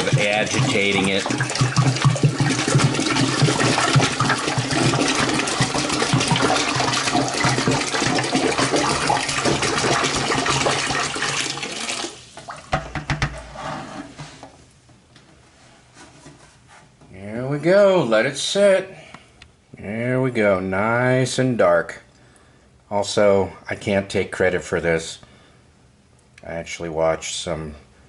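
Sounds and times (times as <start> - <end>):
water pouring into toilet tank: 0.0 - 13.0.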